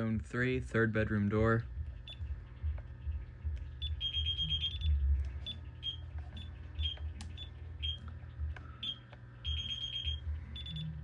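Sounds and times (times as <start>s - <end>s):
low hum: 0.0s - 11.0s
alarm system beeps: 3.8s - 5.0s, 8.8s - 11.0s.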